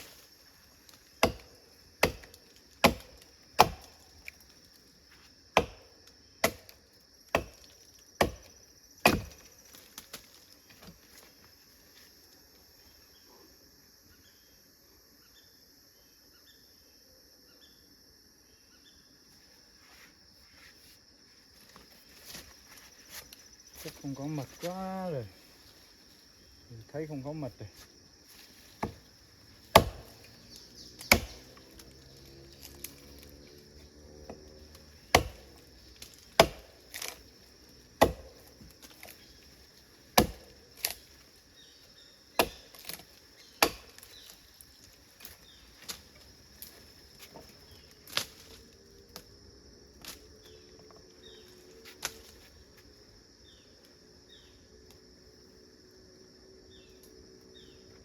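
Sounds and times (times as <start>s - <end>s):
blade chopping into wood: 1.2s - 4.1s, 5.6s - 10.3s, 28.8s - 29.0s, 29.7s - 33.0s, 34.2s - 37.3s, 38.0s - 39.2s, 40.1s - 41.0s, 42.3s - 44.3s
insects shrilling: 21.7s - 52.5s.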